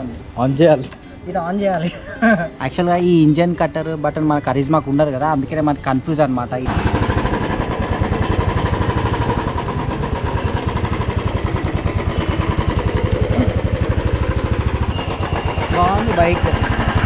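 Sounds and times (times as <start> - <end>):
motorcycle engine running: 6.6 - 17.0.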